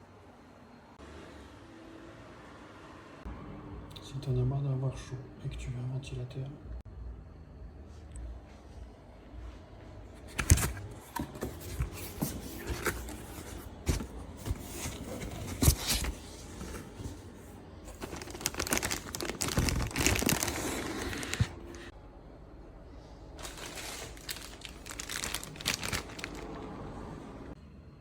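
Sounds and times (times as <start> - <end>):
packaging crinkling and tearing: 17.9 - 21.9, 23.4 - 26.6.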